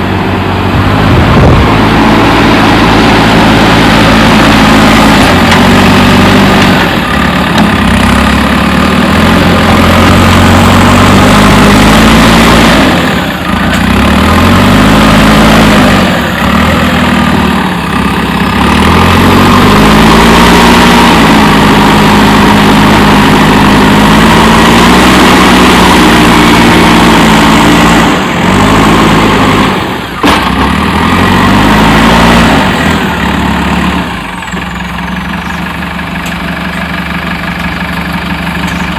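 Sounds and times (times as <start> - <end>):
diesel engine running hard: 0.0 - 38.9.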